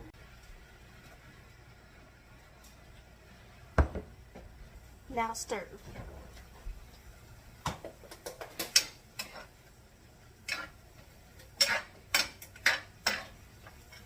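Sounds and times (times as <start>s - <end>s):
utensil stirring food in a pan: 6.3s - 14.0s.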